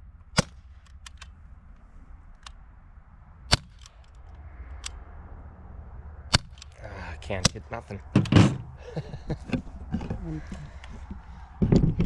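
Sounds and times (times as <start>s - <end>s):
faint clicks: 0.2s - 2.7s
air gun shots: 0.3s - 1.3s, 3.5s - 4.3s, 6.3s - 6.8s.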